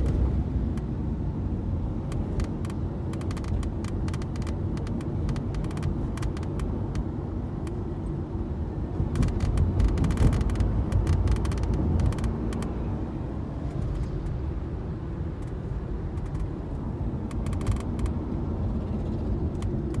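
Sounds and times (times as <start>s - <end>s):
car driving rumble: 0.0s - 20.0s
sunroof rattling clicks: 9.1s - 12.8s, 15.4s - 18.2s.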